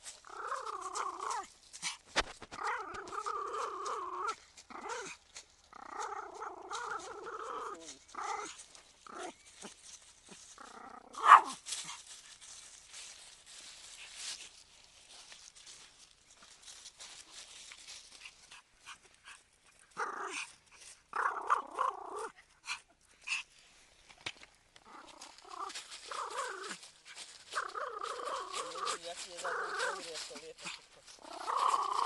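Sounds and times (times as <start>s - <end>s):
dog growling: 0.2s - 1.5s, 2.6s - 9.4s, 10.6s - 11.5s, 21.1s - 22.4s, 24.8s - 26.8s, 27.5s - 32.0s.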